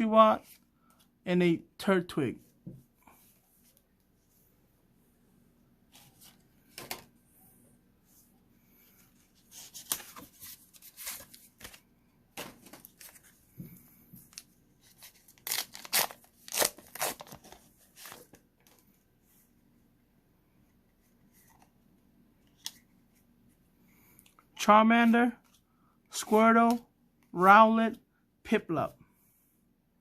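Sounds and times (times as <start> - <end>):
wrapper ripping and crinkling: 15.4 - 18.2.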